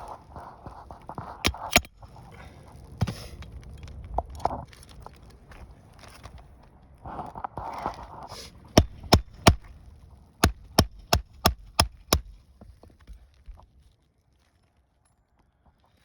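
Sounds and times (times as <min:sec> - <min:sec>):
hammer striking metal tool: 0:01.5 - 0:01.9, 0:08.8 - 0:09.7.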